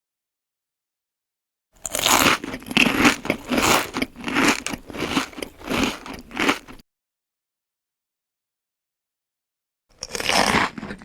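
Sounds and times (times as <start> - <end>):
crunchy chewing: 1.8 - 6.8, 9.9 - 11.0.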